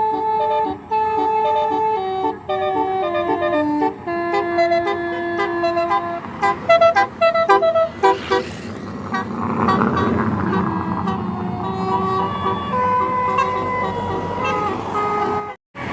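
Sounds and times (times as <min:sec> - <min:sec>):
multi-tone bus horn melody: 0:00.0 - 0:15.6.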